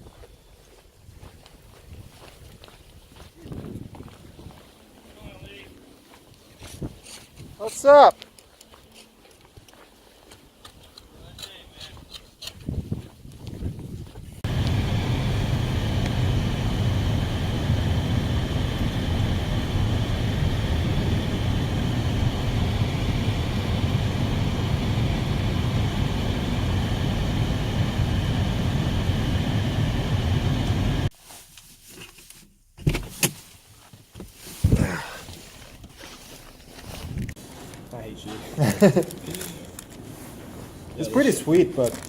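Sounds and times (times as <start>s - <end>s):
machine running with high whine: 14.4s - 31.1s.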